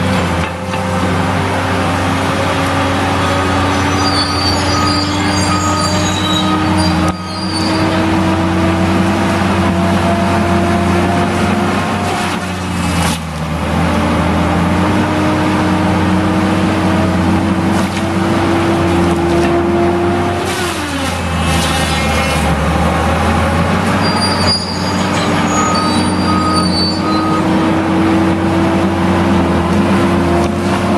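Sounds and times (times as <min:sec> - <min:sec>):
heavy machinery engine running: 0:00.0 - 0:30.9
reverse alarm beeps: 0:03.8 - 0:07.4.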